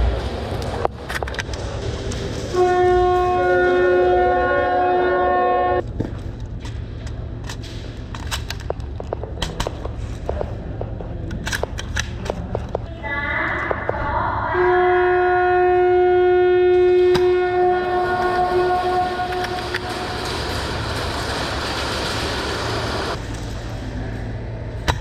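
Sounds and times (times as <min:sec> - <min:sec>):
horn steady note: 0:02.5 - 0:05.8, 0:14.5 - 0:20.9.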